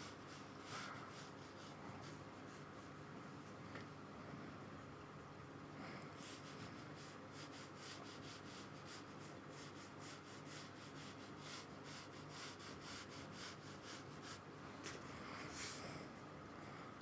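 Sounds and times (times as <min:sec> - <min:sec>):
paintbrush rubbing on paper: 0:00.0 - 0:03.6, 0:06.2 - 0:14.4.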